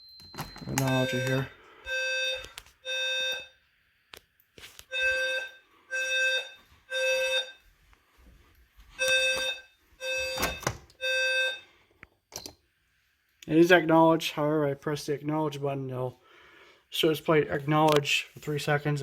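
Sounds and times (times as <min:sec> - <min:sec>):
smoke alarm beeping: 0:00.0 - 0:03.7, 0:04.8 - 0:08.2, 0:08.8 - 0:12.5.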